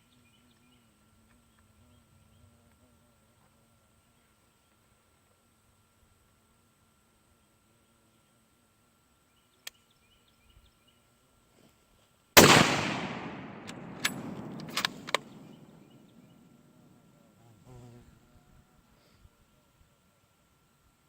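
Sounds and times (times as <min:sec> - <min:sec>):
sharp clicks: 0:12.4 - 0:15.8
rifle shot with echo: 0:12.4 - 0:16.0.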